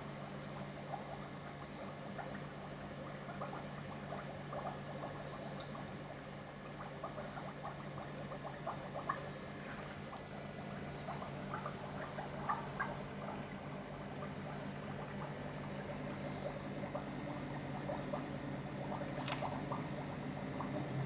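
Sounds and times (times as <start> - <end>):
steady low hum: 0.0 - 21.0
water trickling and pattering: 0.0 - 21.0.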